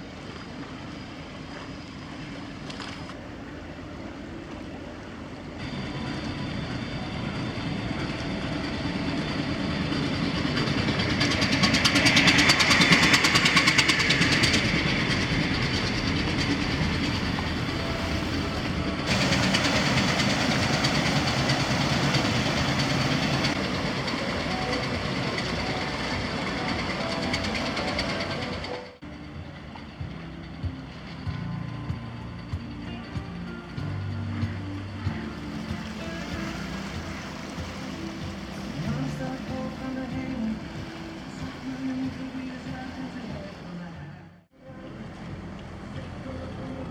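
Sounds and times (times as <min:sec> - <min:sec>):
ship diesel engine running: 0:00.0 - 0:46.9.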